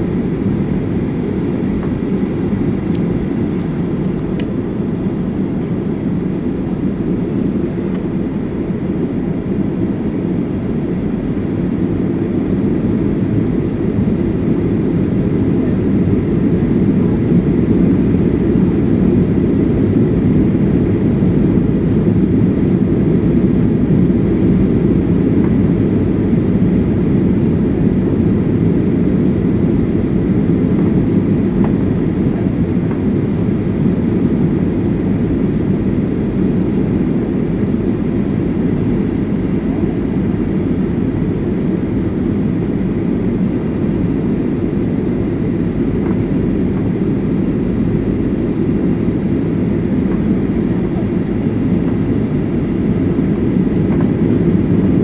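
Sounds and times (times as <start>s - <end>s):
airliner cabin engine rumble: 0.0s - 55.0s.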